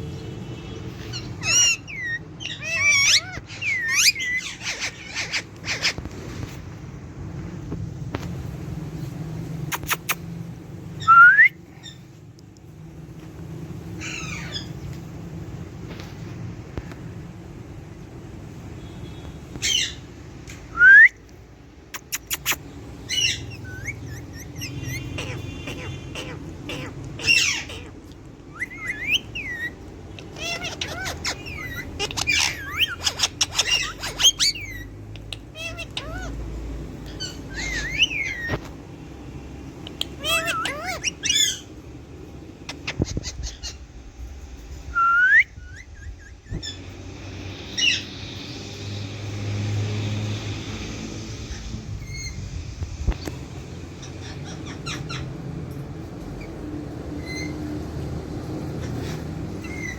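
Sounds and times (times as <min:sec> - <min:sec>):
parakeet squawking: 0:00.9 - 0:06.4, 0:14.0 - 0:14.8, 0:22.0 - 0:38.7, 0:39.6 - 0:44.0, 0:53.8 - 0:55.5, 0:58.5 - 0:59.9
parakeet warbling call: 0:01.0 - 0:06.0, 0:22.4 - 0:38.6, 0:39.9 - 0:43.9.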